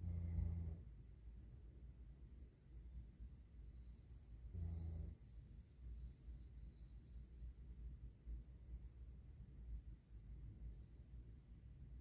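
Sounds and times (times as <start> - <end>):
low room rumble: 0.0 - 12.0
faint high-pitched chirps: 2.8 - 8.1.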